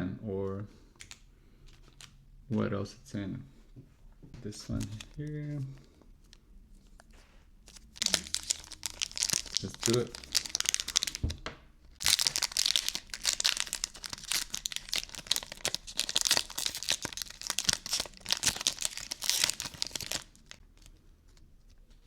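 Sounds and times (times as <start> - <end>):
foil wrapper crinkling and tearing: 7.6 - 11.3, 12.0 - 21.8.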